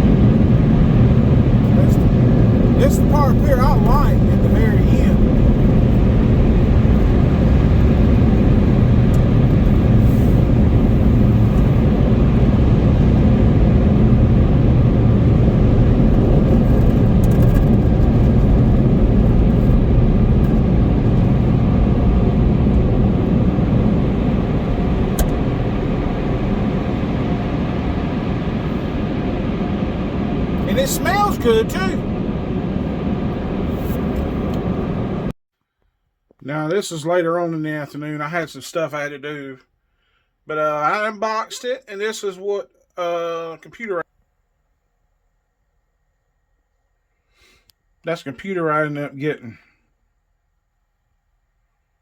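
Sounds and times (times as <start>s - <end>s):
car road and engine rumble: 0.0s - 35.4s.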